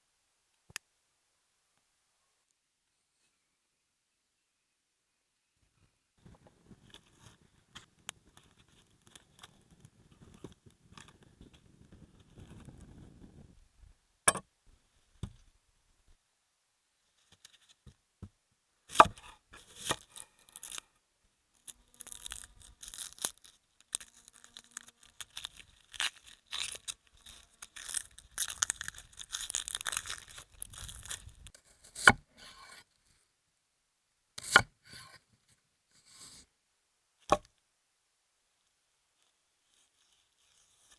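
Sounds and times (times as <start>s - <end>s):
tearing and rustling: 19.6s - 20.9s, 21.6s - 31.5s.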